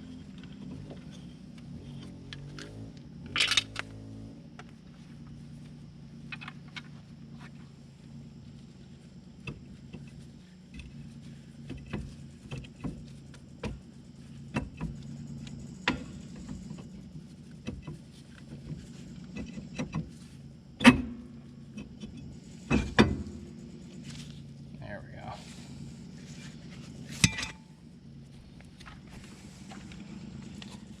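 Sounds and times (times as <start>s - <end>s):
steady low hum: 0.0s - 31.0s
metal parts clinking: 3.3s - 3.8s.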